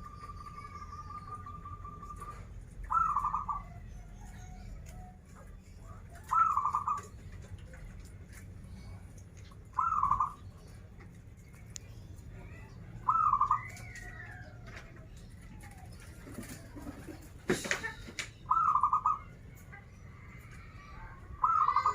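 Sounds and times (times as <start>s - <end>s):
dove cooing: 0.0s - 4.4s, 6.1s - 7.3s, 9.7s - 10.4s, 13.0s - 19.4s, 21.3s - 21.9s.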